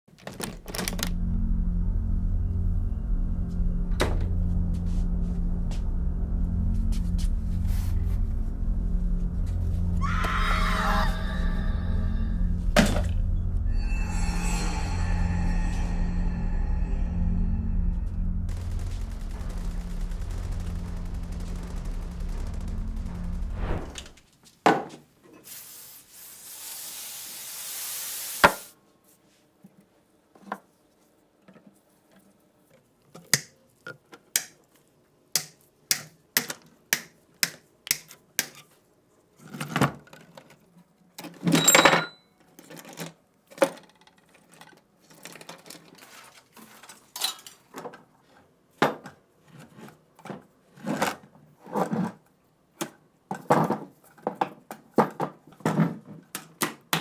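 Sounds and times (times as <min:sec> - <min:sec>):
steady hiss: 0:25.4 - 0:28.7.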